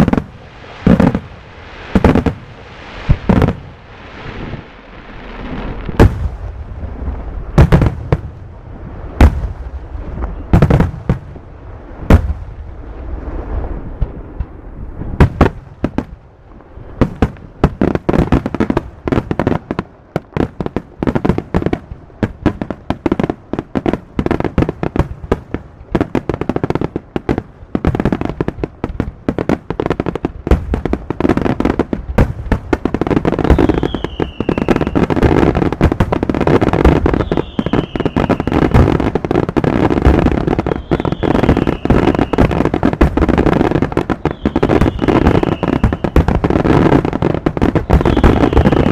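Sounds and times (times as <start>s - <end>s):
fireworks falling whistles: 0.0s - 8.2s, 9.1s - 11.2s, 11.9s - 19.5s, 30.6s - 48.9s
fireworks bangs and crackling: 0.0s - 48.9s.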